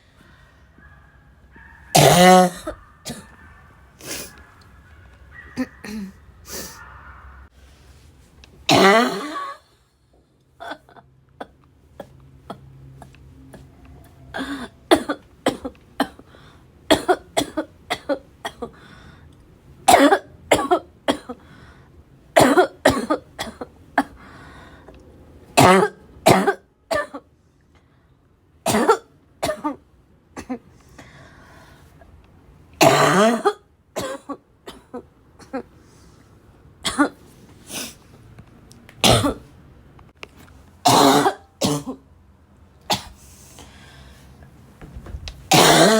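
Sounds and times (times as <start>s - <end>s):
person clearing throat: 2.0s - 3.4s, 8.7s - 9.6s, 32.8s - 35.7s, 39.0s - 39.5s, 40.9s - 42.0s, 45.5s - 45.9s
person coughing harshly: 2.0s - 3.4s, 8.7s - 9.6s, 14.4s - 16.3s, 16.9s - 18.8s, 19.9s - 21.4s, 22.4s - 24.2s, 25.6s - 27.2s, 28.7s - 29.8s, 32.8s - 35.7s, 36.8s - 37.2s, 39.0s - 39.5s, 40.8s - 42.0s, 45.0s - 45.9s.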